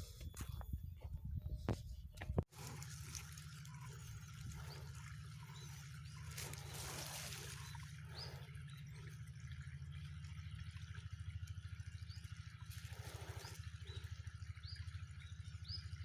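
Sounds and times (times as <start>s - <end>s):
wind rumble on microphone: 0.0s - 2.7s
birds calling faintly: 0.0s - 16.0s.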